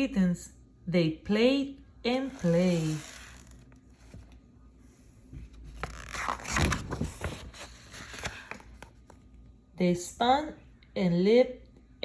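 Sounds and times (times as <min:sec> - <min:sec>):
rustling and scraping handling noise: 0:02.4 - 0:09.2.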